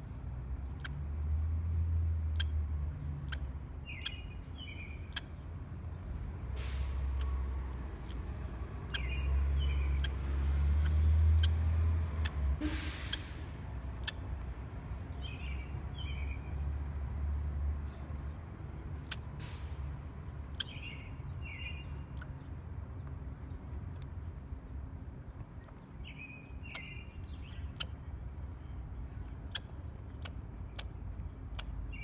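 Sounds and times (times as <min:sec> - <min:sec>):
squirrel chirping: 0:00.7 - 0:01.0, 0:02.3 - 0:05.6, 0:07.1 - 0:12.4, 0:14.0 - 0:14.2, 0:19.0 - 0:19.3, 0:20.4 - 0:22.4, 0:25.6 - 0:32.0.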